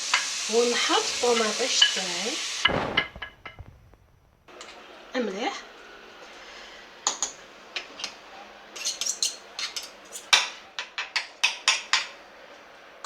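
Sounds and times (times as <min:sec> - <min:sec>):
utensils clinking against cookware: 0:00.1 - 0:02.3, 0:07.0 - 0:12.2.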